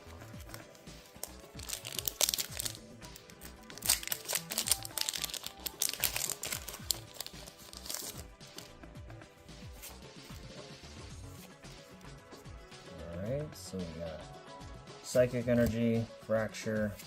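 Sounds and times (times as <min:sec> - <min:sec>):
foil wrapper crinkling and tearing: 0:00.0 - 0:08.7
background music: 0:00.0 - 0:17.0.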